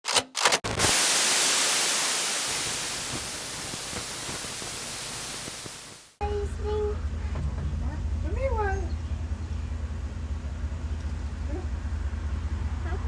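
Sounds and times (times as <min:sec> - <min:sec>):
static-like hiss: 0:00.7 - 0:06.2.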